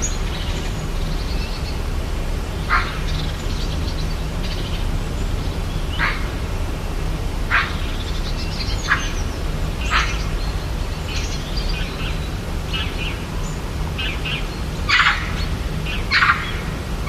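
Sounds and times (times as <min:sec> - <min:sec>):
low background rumble: 0:00.0 - 0:17.0
bird sharp calls: 0:02.6 - 0:04.7, 0:05.8 - 0:06.6, 0:07.4 - 0:12.2, 0:14.0 - 0:16.8.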